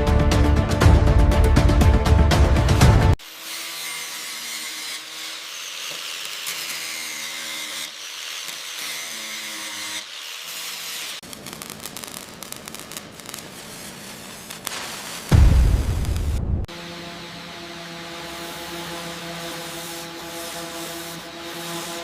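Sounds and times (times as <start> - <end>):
power tool hissing: 3.2 - 22.0
crackling clicking hiss: 11.2 - 16.2.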